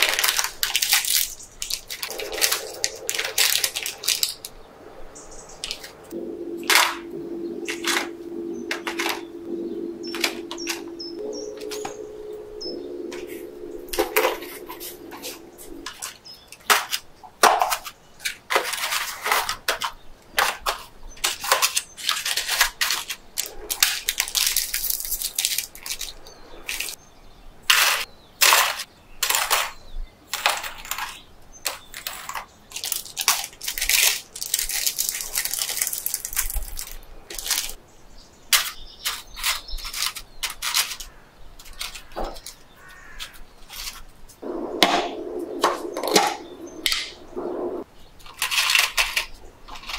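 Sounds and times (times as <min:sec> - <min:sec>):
plastic wrapper crinkling: 0:00.0 - 0:04.5, 0:21.5 - 0:26.9, 0:32.7 - 0:37.8.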